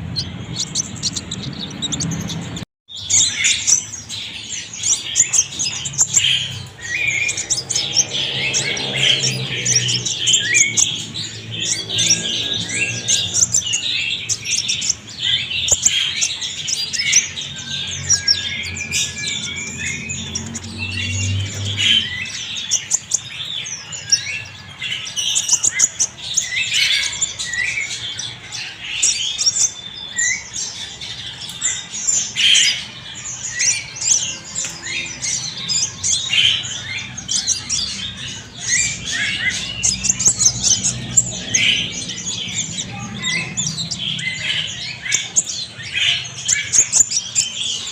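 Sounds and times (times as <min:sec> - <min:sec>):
bird chirping and twittering: 0:00.0 - 0:47.9.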